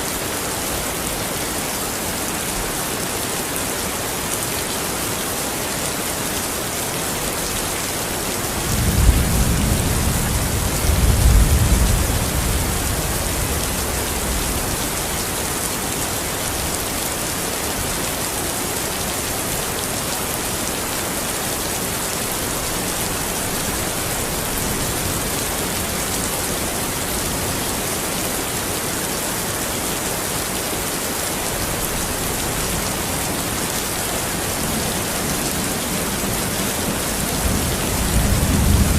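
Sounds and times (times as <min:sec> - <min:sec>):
heavy rain falling: 0:00.0 - 0:38.9
low roll of thunder: 0:08.6 - 0:15.0, 0:36.9 - 0:38.9.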